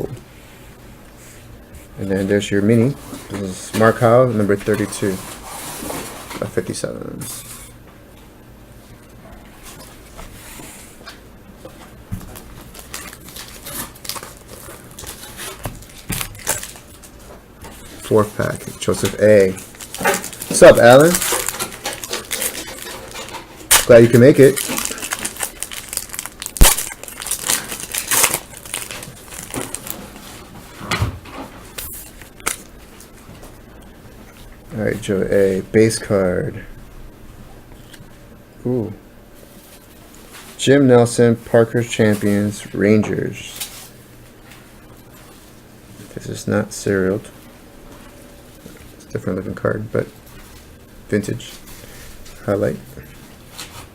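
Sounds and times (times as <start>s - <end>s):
cards and wrappers rustling: 12.2s - 30.5s.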